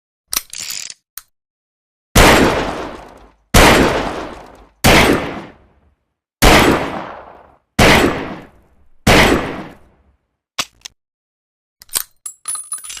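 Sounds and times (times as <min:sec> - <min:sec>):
metallic clicking and clatter: 0:11.8 - 0:13.0.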